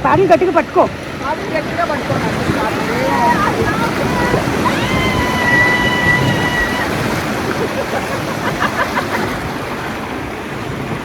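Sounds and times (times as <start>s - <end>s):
rushing whitewater: 0.0s - 11.0s
people shouting: 2.6s - 7.2s.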